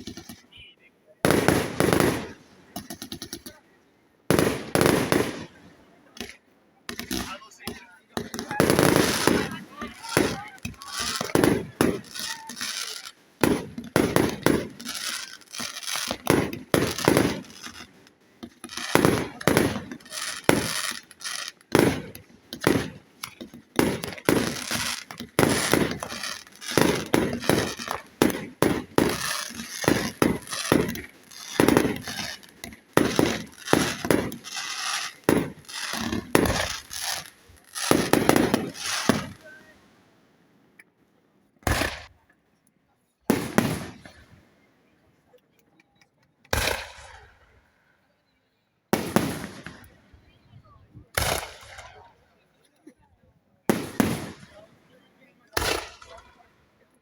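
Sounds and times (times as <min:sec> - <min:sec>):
fireworks bursting: 0:00.0 - 0:00.6, 0:01.2 - 0:03.6, 0:04.3 - 0:39.8, 0:41.6 - 0:42.2, 0:43.3 - 0:44.4, 0:46.5 - 0:47.6, 0:48.9 - 0:52.2, 0:53.7 - 0:56.5
fireworks crackle: 0:00.0 - 0:00.6, 0:01.2 - 0:03.6, 0:04.3 - 0:39.7, 0:41.7 - 0:42.1, 0:43.3 - 0:44.4, 0:46.5 - 0:47.4, 0:48.9 - 0:50.4, 0:51.0 - 0:52.2, 0:53.7 - 0:54.9, 0:55.5 - 0:56.5.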